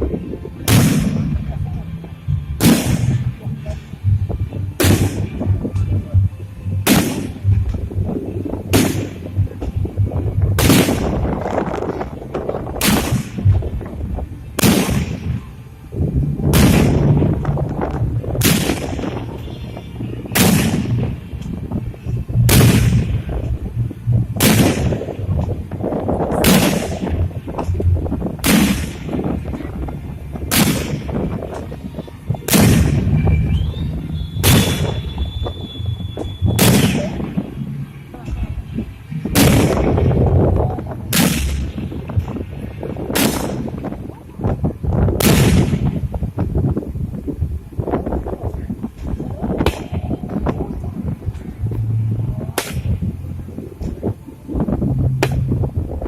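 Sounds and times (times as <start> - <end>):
fireworks booming: 0.0 - 1.9, 2.5 - 15.5, 16.1 - 46.7, 52.2 - 56.0
steady low rumble: 0.0 - 56.0
fireworks crackle: 4.8 - 6.0, 6.8 - 15.5, 16.4 - 46.7.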